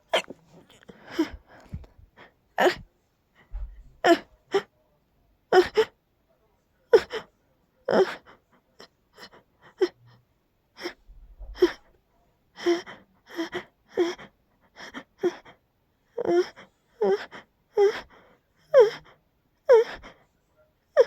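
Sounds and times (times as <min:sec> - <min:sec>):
person sneezing: 0:00.1 - 0:01.8.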